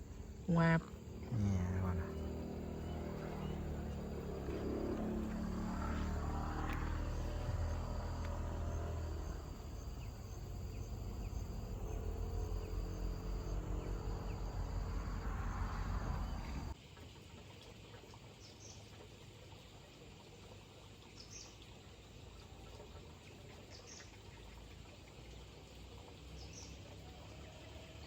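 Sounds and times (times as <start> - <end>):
insects trilling: 0.0 - 16.8
low rumble of wind or road: 0.0 - 16.8.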